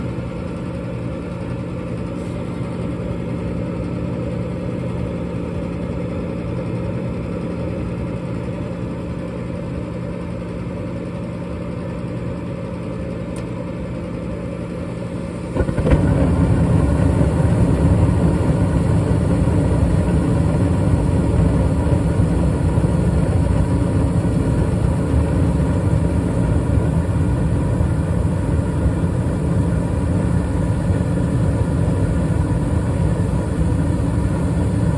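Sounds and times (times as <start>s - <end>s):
gas furnace running: 0.0s - 6.3s, 8.2s - 34.9s.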